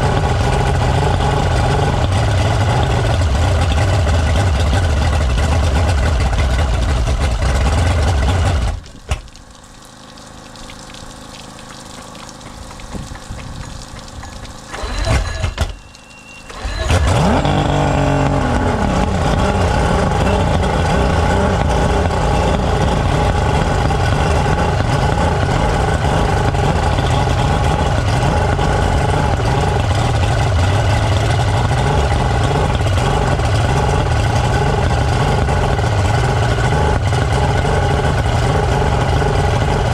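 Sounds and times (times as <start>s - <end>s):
outboard motor cranking: 0.0s - 39.9s
outboard motor running: 0.0s - 39.9s.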